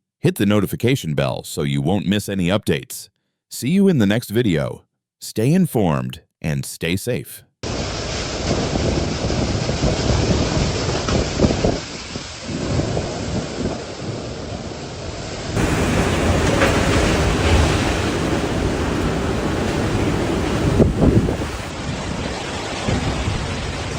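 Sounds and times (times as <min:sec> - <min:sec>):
rain: 0:07.6 - 0:23.9
strong wind: 0:07.6 - 0:23.9
wind buffeting microphone: 0:15.6 - 0:23.8.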